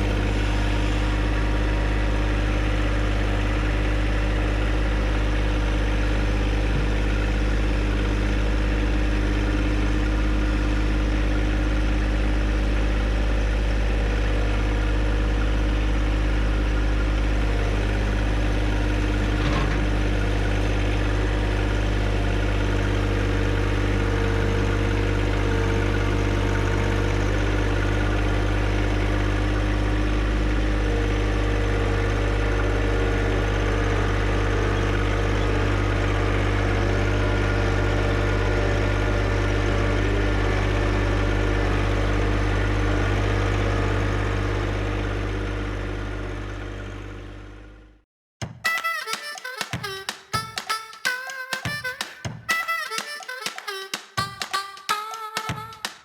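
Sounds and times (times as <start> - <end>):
tractor diesel engine running: 0.0 - 26.7.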